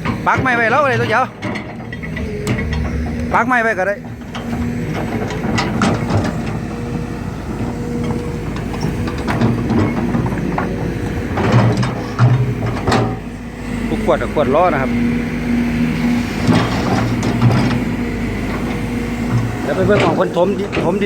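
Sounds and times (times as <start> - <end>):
metallic clanks and squeaks: 0.0 - 13.4, 15.8 - 21.0
excavator diesel engine: 0.0 - 21.0.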